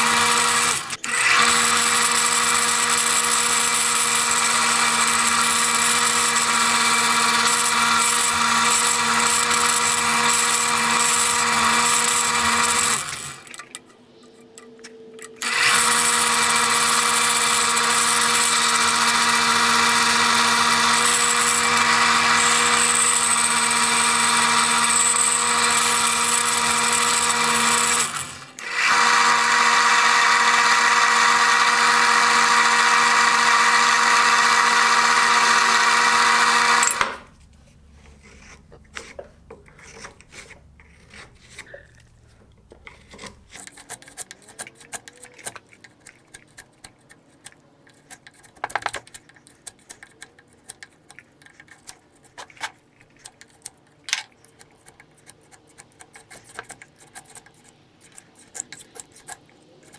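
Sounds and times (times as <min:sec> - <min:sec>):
power tool whining: 0:00.0 - 0:13.8, 0:15.2 - 0:37.3.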